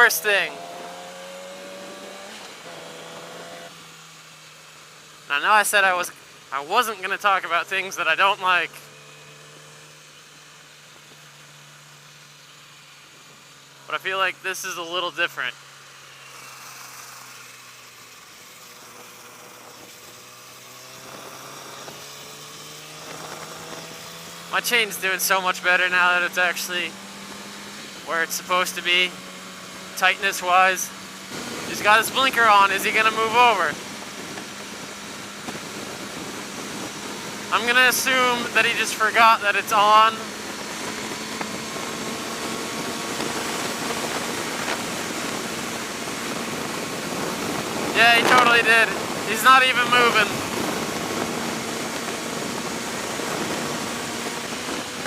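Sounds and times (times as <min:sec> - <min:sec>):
motorcycle engine running: 0:00.0 - 0:05.4, 0:15.5 - 0:55.0
wind noise: 0:40.2 - 0:49.3, 0:50.1 - 0:55.0.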